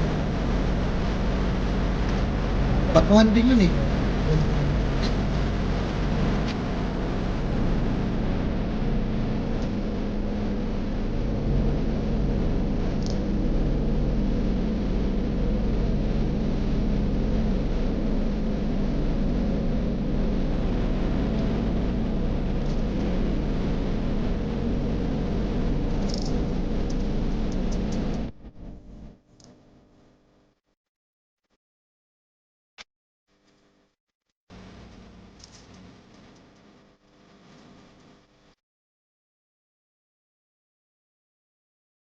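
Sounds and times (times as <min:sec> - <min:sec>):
car road and engine noise: 0:00.0 - 0:09.2.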